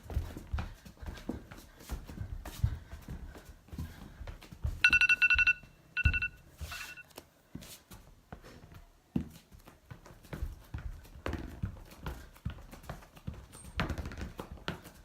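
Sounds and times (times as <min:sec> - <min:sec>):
phone ringing electronic trill: 0:04.8 - 0:07.0.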